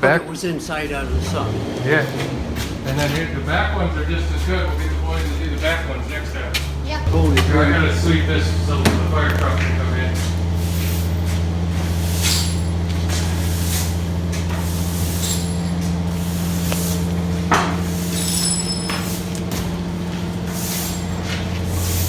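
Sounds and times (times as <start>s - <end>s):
engine idling hum: 0.0s - 22.0s
broom sweeping floor: 10.1s - 22.0s.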